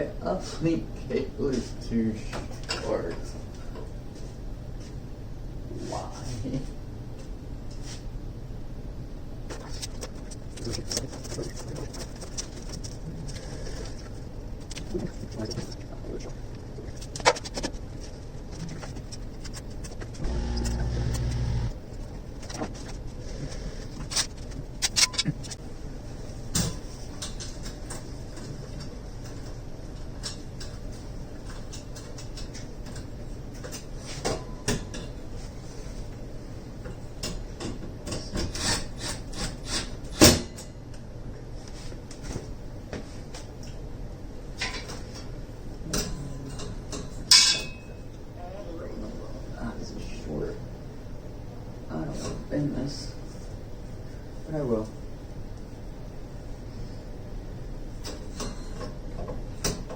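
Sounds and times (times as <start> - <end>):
steady low hum: 0.0 - 59.9
brief low buzz: 20.2 - 21.8.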